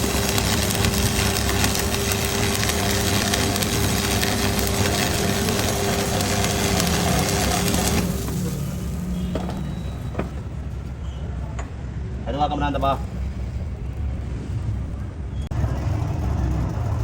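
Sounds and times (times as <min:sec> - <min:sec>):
arc welding crackling hiss: 0:00.0 - 0:09.8
engine humming: 0:00.0 - 0:11.8.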